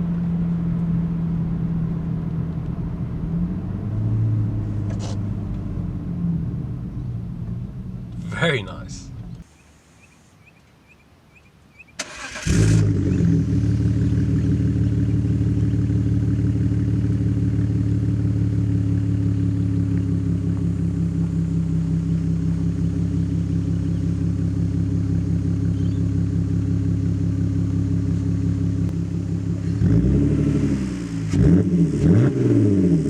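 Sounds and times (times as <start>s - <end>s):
car engine starting and idling: 0.0s - 9.5s, 12.0s - 33.0s
engine starter cranking: 12.0s - 13.0s.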